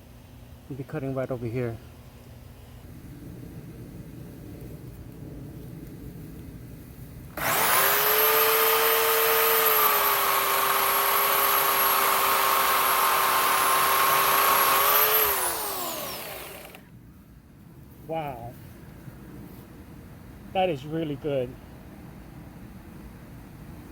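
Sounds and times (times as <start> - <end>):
electric chainsaw cutting branch: 7.4 - 16.9.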